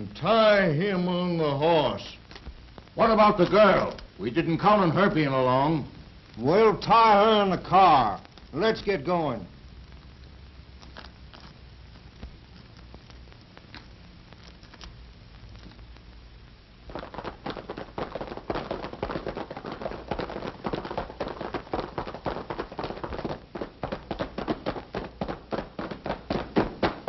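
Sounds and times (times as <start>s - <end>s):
faint hum: 0.0s - 27.0s
horse hooves clattering: 16.9s - 27.0s.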